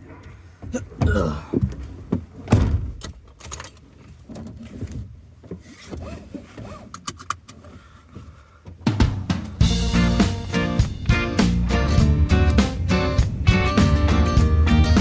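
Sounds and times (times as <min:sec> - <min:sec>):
handling clicks rattles and knocks: 0:01.0 - 0:07.7
loud thump: 0:02.5 - 0:03.0.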